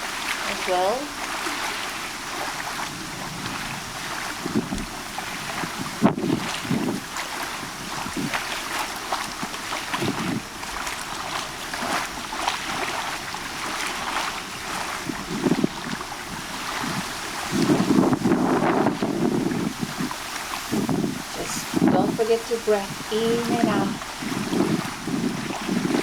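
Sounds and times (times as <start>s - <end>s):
water lapping and splashing: 0.0s - 26.0s
wind thumps on microphone: 2.8s - 8.4s, 9.3s - 10.8s, 14.7s - 26.0s.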